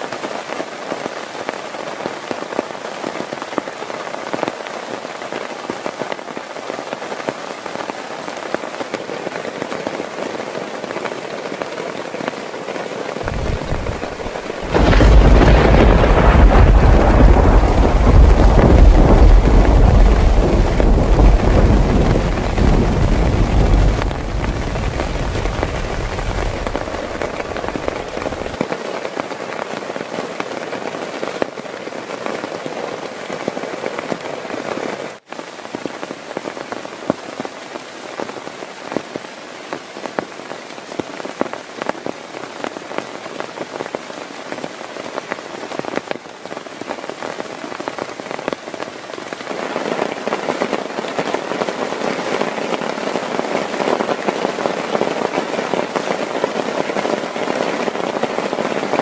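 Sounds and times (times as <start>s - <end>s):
heavy rain falling: 0.0s - 59.0s
low thunder rumble: 13.2s - 28.6s.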